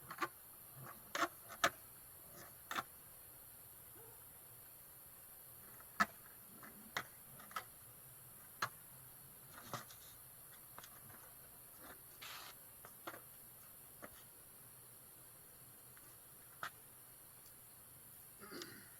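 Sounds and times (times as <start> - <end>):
skateboard clacking and knocking: 0.0 - 2.9, 5.7 - 7.7
faint steady hiss: 0.0 - 18.9.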